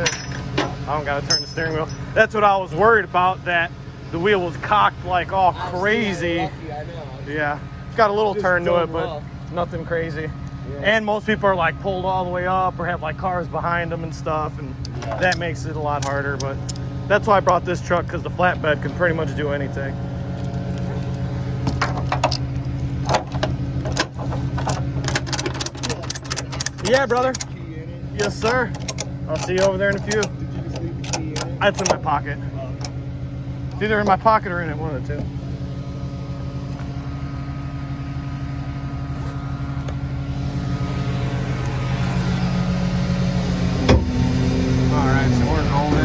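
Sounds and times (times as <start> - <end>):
sharp metallic clicks and rattles: 0.0 - 2.4, 14.8 - 17.9, 20.2 - 34.4
truck engine idling: 0.0 - 46.0.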